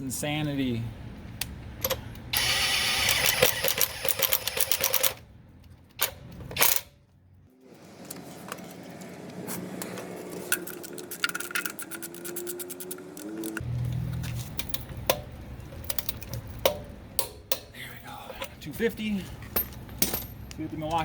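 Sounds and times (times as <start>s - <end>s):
tools rattling: 10.3s - 18.6s, 19.2s - 21.0s
impact wrench hammering: 16.6s - 17.8s
sharp metal clunks: 16.6s - 17.8s, 19.6s - 20.4s.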